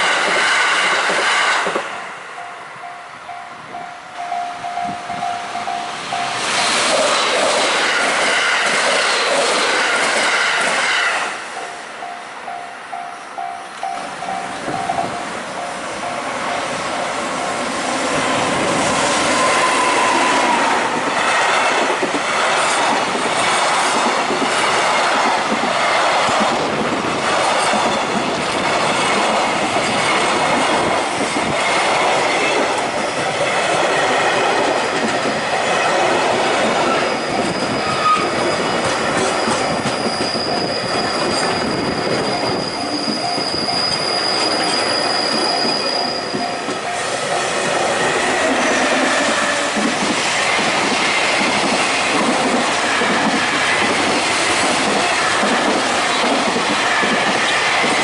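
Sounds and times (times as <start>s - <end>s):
train wheels rumbling on rails: 0.0s - 58.0s
high wheel squeal: 18.8s - 21.0s, 36.8s - 49.8s.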